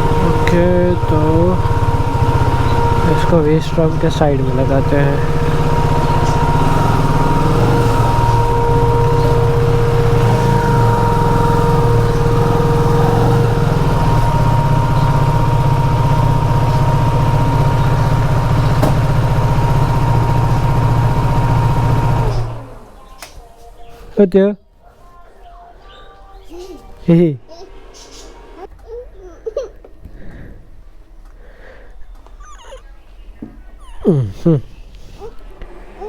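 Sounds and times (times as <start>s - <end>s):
motorcycle engine idling: 0.0s - 23.2s.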